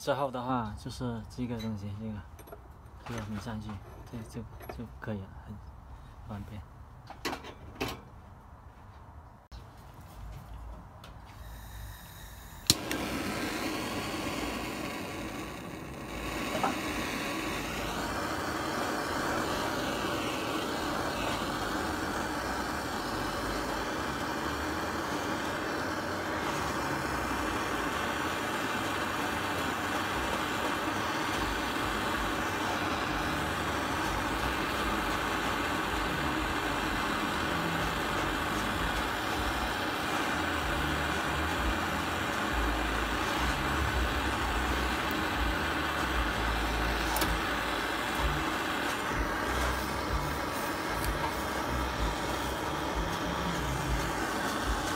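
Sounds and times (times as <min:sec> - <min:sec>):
gas torch flame hissing: 0:11.1 - 0:54.9.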